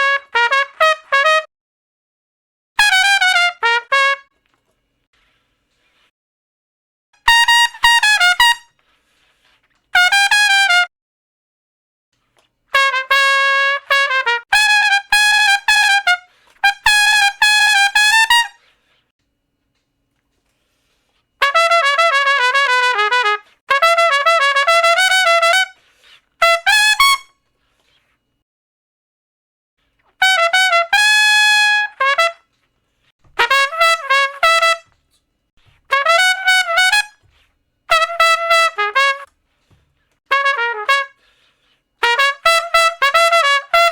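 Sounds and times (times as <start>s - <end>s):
solo trumpet playing quick notes: 0.0s - 1.5s, 2.8s - 4.3s, 7.2s - 8.7s, 9.9s - 10.9s, 12.7s - 18.8s, 21.4s - 27.4s, 30.2s - 32.5s, 33.3s - 35.0s, 35.9s - 39.3s, 40.3s - 41.3s, 42.0s - 43.9s.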